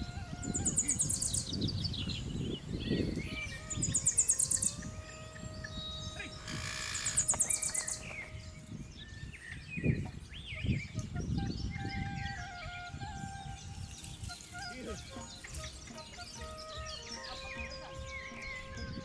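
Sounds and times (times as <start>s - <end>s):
birds chirping trills: 0.0s - 19.0s
thin bird chirps: 5.7s - 8.4s.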